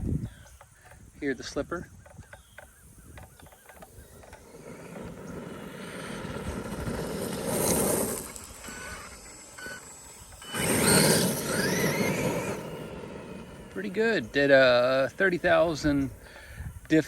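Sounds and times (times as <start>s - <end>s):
electric motor whining: 2.4s - 17.0s
tires churning over gravel: 4.2s - 17.0s.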